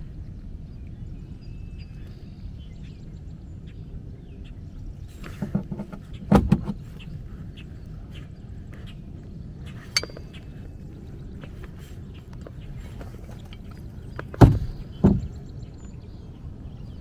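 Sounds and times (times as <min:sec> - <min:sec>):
steady low rumble: 0:00.0 - 0:17.0
sharp knocks and clatter: 0:09.9 - 0:10.4, 0:13.3 - 0:15.4.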